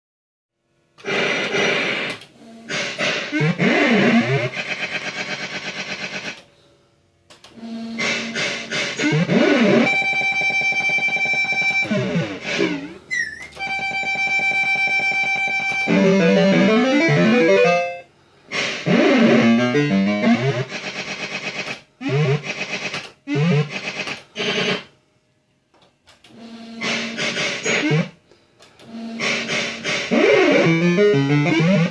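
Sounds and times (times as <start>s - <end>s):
rapid electronic note runs: 7.6s - 24.9s, 26.6s - 28.2s, 28.9s - 31.9s
long buzzy tones: 9.0s - 18.1s, 18.9s - 20.7s, 30.1s - 31.9s
fruit machine beeping tunes: 13.2s - 18.1s, 30.4s - 31.9s.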